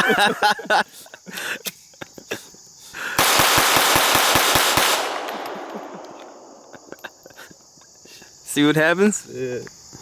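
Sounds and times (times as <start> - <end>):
pistol shots fired rapidly: 3.2 - 6.6.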